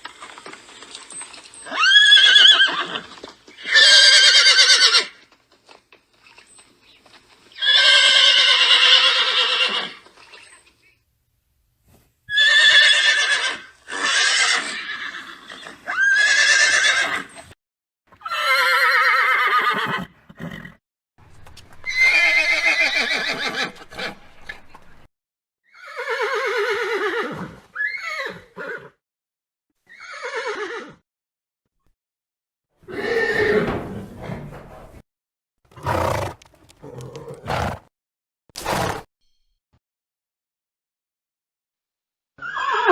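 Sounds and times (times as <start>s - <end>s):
horse whinnying: 1.6s - 5.2s, 7.6s - 10.0s, 12.3s - 17.5s, 18.2s - 20.8s, 21.8s - 24.6s, 25.7s - 29.0s, 29.8s - 31.0s, 32.8s - 35.0s, 35.7s - 37.9s, 38.6s - 39.1s, 42.4s - 42.9s.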